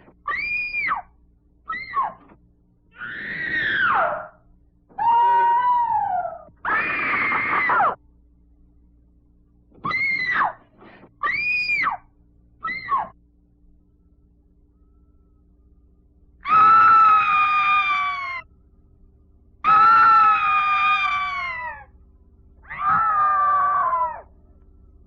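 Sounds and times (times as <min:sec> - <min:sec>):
faint steady hum: 0:00.0 - 0:25.0
screams and wails: 0:03.0 - 0:08.0, 0:16.4 - 0:18.5, 0:19.6 - 0:21.9, 0:22.6 - 0:24.4.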